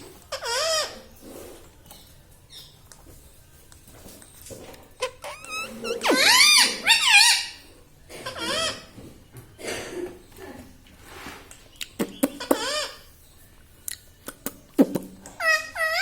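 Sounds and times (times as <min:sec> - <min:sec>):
parrot chattering: 0:05.0 - 0:07.6, 0:11.8 - 0:13.0, 0:14.3 - 0:16.0.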